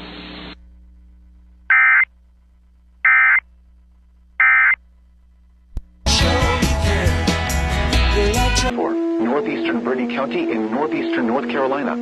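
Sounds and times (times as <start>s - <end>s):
data tone bursts: 1.7s - 2.1s, 3.0s - 3.4s, 4.4s - 4.8s
music: 6.0s - 12.0s.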